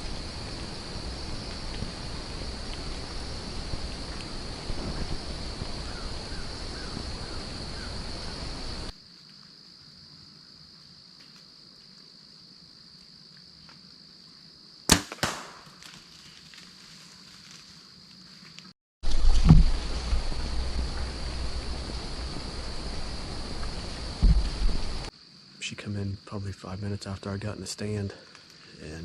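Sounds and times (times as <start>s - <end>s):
high insect drone: 0.0s - 29.0s
arrow hitting target: 14.9s - 16.0s, 19.0s - 19.9s
bowstring release crack: 14.9s - 16.0s.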